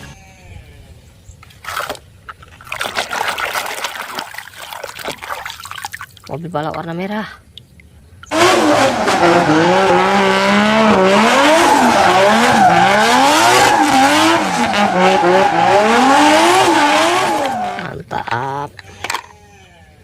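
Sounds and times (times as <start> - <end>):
racing car engine revving: 8.3 - 17.9.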